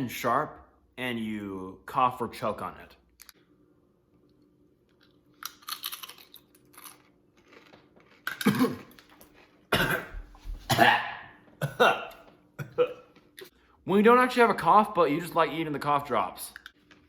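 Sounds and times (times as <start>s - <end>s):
person chewing crunchy food: 4.9s - 10.4s
person coughing and choking: 8.3s - 9.0s, 9.7s - 13.1s.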